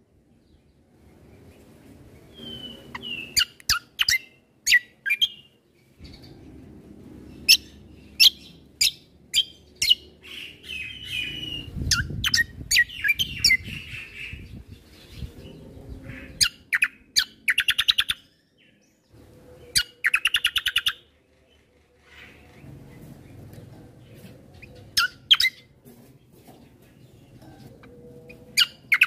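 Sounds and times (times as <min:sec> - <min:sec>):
songbird chirping: 0:00.0 - 0:29.0
bird trill: 0:02.3 - 0:06.4, 0:07.3 - 0:18.9, 0:19.6 - 0:23.1, 0:24.5 - 0:25.7, 0:27.3 - 0:29.0.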